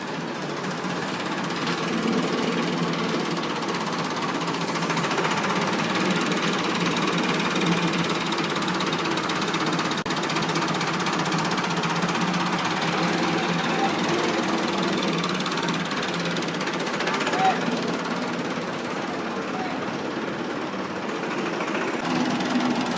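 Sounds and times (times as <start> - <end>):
tractor diesel engine clattering: 0.0 - 22.9.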